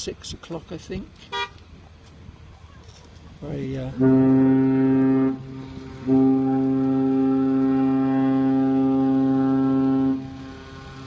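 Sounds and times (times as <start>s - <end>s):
ship horn blasts: 1.3s - 1.6s, 3.6s - 11.0s.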